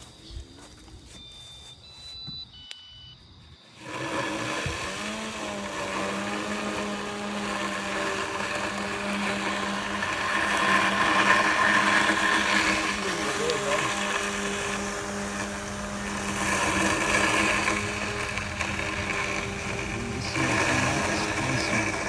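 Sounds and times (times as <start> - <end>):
robotic lawnmower motors humming: 0.0 - 22.0
short high beeps: 1.1 - 3.3.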